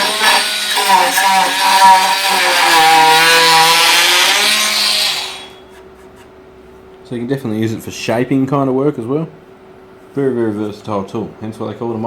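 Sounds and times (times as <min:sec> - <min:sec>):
oscillating multi-tool whine: 0:00.0 - 0:05.7.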